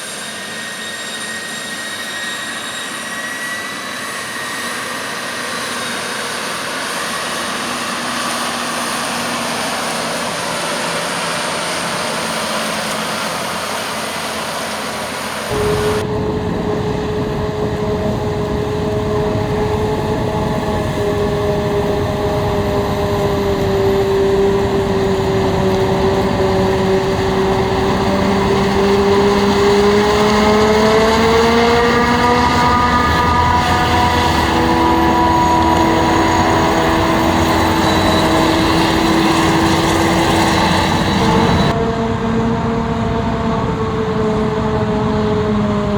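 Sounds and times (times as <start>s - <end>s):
diesel engine with hiss: 0.0s - 45.9s
diesel engine revving: 15.5s - 45.9s.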